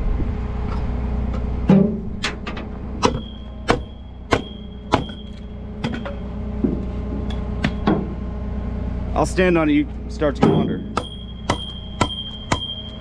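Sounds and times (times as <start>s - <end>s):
tow truck engine idling: 1.2s - 13.0s
sharp knocks: 1.7s - 8.2s, 10.4s - 13.0s
thin high steady tone: 3.1s - 6.4s, 10.9s - 13.0s.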